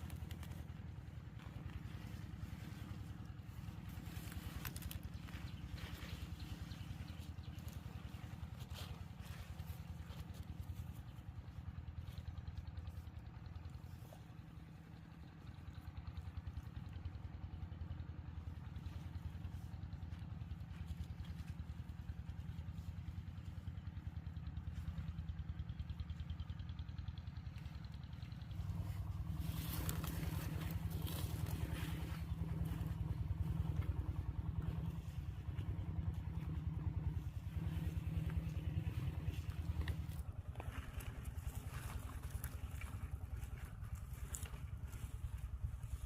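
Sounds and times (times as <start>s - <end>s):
small engine running: 0.0s - 46.0s.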